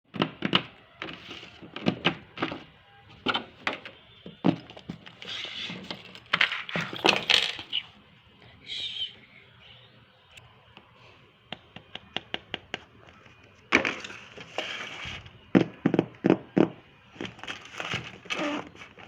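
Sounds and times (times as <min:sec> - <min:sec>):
packaging clicks and taps: 0:11.5 - 0:14.2.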